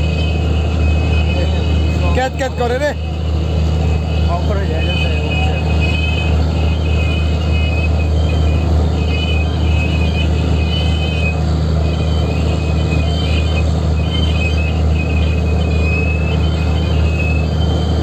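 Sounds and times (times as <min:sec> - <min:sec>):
boat engine droning: 0:00.0 - 0:18.0.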